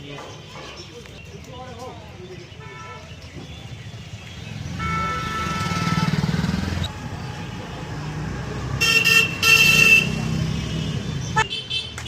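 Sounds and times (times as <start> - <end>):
motorbike engine passing: 3.9 - 11.4
vehicle horn honking: 4.8 - 6.6, 8.8 - 12.0.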